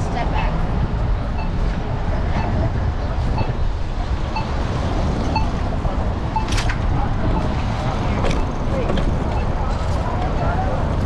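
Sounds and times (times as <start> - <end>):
city street traffic rumble: 0.0 - 11.0
wind on microphone: 0.0 - 11.0
short beeps: 1.4 - 1.6, 3.3 - 3.6, 4.3 - 4.6, 5.3 - 5.6, 6.3 - 6.6.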